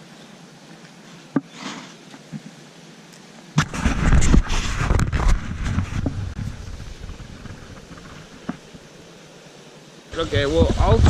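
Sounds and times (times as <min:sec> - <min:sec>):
rubbing on camera microphone: 0:03.6 - 0:08.7.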